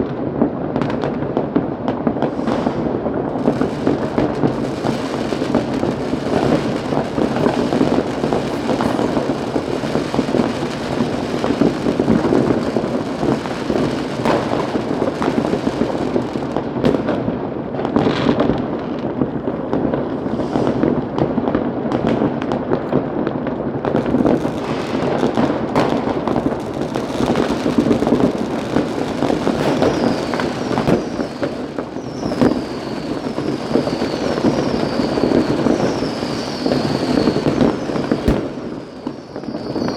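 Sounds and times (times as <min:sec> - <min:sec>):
fireworks crackling and banging: 0:00.0 - 0:39.9
falling firework whistle: 0:02.0 - 0:17.2, 0:20.0 - 0:21.3, 0:23.8 - 0:39.9.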